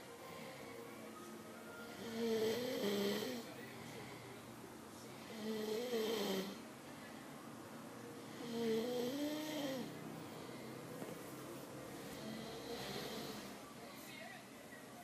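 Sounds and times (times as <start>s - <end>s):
quiet breathing: 0.0s - 14.5s
man snoring: 1.9s - 3.6s, 5.2s - 6.6s, 8.3s - 10.8s, 12.0s - 13.6s.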